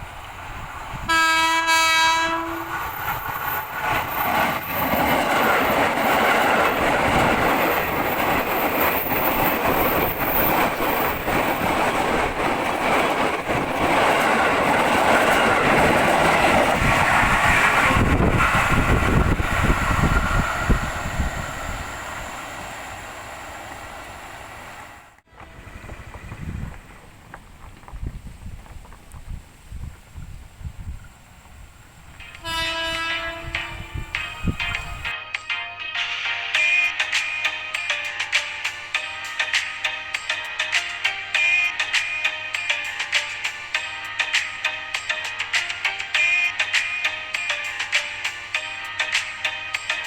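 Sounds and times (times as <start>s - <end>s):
train passing with rumble: 0.0s - 35.2s
train horn blast: 1.0s - 2.9s, 25.3s - 26.2s, 32.2s - 35.1s
train wheel clatter: 2.5s - 24.4s, 25.4s - 35.1s.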